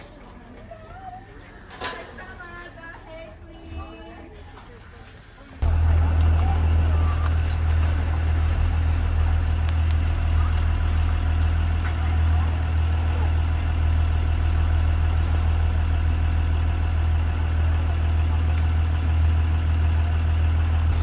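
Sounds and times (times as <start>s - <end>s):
bus engine idling: 5.6s - 21.0s.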